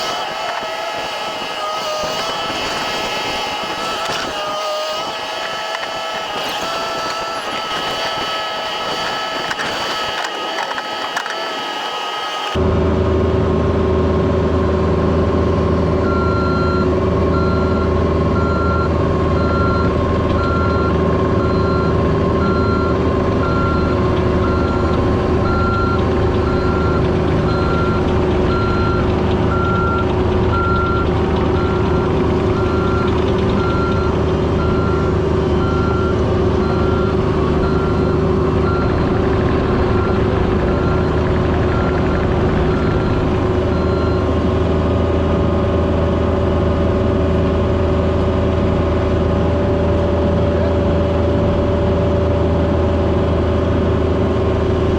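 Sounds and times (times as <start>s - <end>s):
machine engine running: 0.0s - 54.9s
backup alarm beeping: 16.0s - 44.3s.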